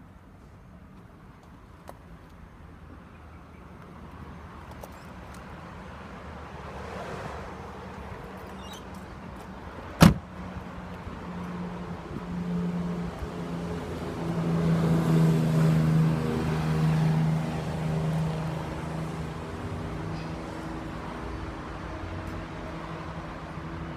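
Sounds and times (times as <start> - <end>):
sharp thud: 10.0 - 10.2.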